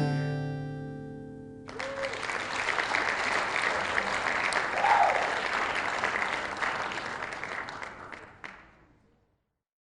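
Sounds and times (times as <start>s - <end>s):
person whooping: 1.7s - 2.3s, 4.7s - 5.4s
audience applauding: 1.7s - 9.0s.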